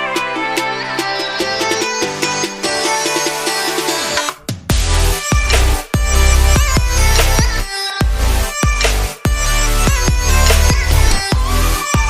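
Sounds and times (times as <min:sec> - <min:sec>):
instrumental background music: 0:00.0 - 0:12.0.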